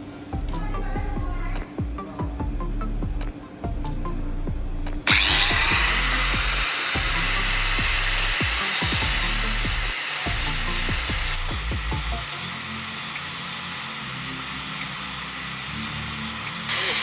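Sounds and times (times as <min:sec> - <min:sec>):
background music: 0:00.0 - 0:17.0
power tool hissing: 0:05.0 - 0:17.0.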